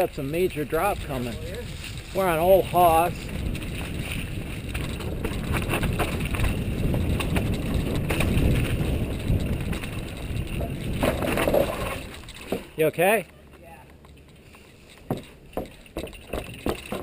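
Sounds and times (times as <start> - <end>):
bike rattling over rocks: 0.0 - 17.0
tyres rumbling over ground: 0.0 - 17.0.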